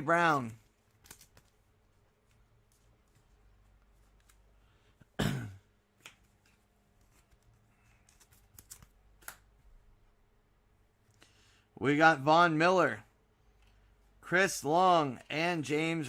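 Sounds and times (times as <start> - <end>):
cards and packaging rustling: 0.1 - 4.6, 6.0 - 9.5.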